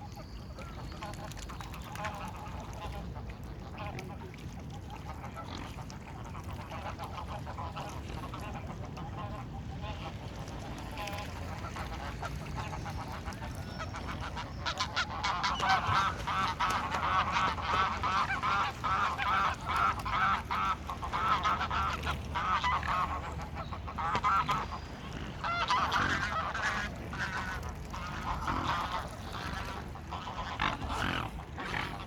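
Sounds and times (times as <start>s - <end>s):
geese honking: 13.8s - 24.7s, 25.3s - 32.0s.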